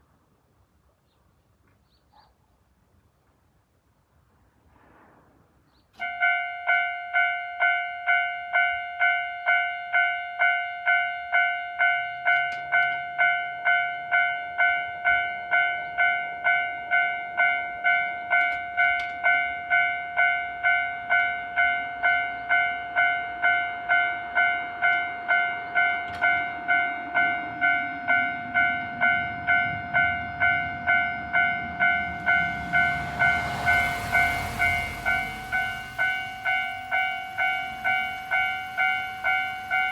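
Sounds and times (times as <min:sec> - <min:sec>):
level crossing bell ringing: 0:06.0 - 0:39.9
train rumble: 0:11.7 - 0:39.9.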